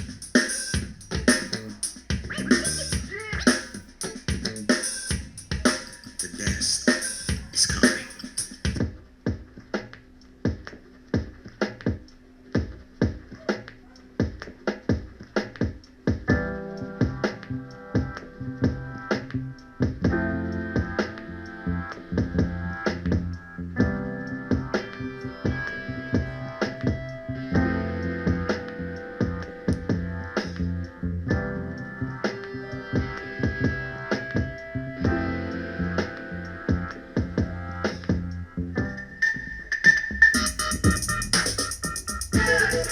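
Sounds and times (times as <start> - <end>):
electronic drum beat: 0.0 - 21.2, 22.1 - 31.7, 32.3 - 35.2, 36.7 - 39.0, 39.8 - 42.9
sustained keyboard chords: 15.1 - 42.9.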